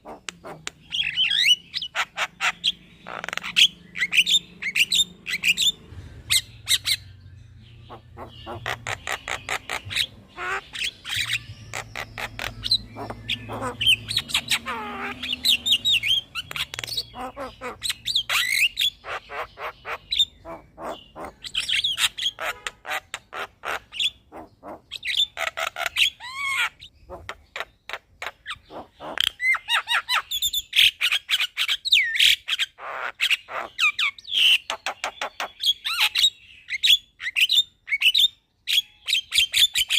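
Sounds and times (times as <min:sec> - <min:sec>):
bird singing clicks and whistles: 0:16.0 - 0:17.1.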